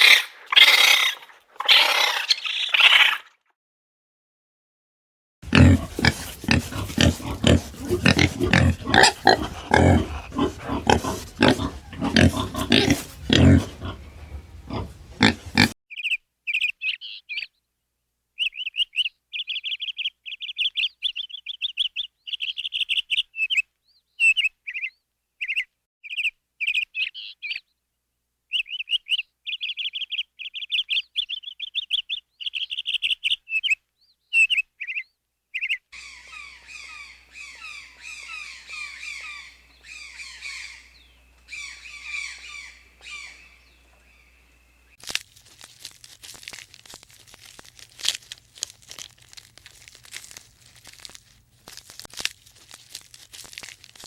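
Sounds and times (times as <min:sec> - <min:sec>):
animal grunting: 0:05.4 - 0:15.8
bird chirping: 0:05.5 - 0:17.6, 0:28.5 - 0:45.0.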